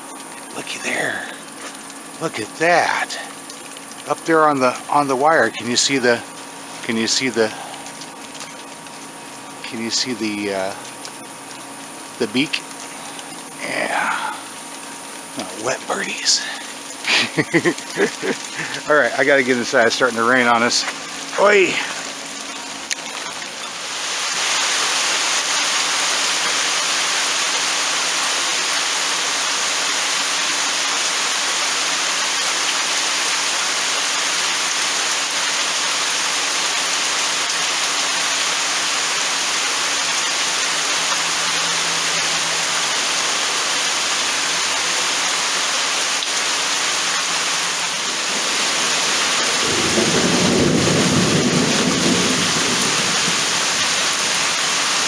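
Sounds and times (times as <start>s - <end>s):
heavy rain: 0.0s - 55.0s
thunder rumble: 48.1s - 55.0s.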